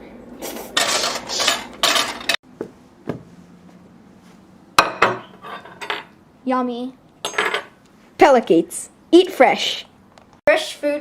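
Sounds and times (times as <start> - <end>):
dishes and cutlery clattering: 0.8 - 2.4, 4.8 - 6.1, 7.2 - 7.8
dishes clinking: 4.8 - 6.1, 7.2 - 7.8.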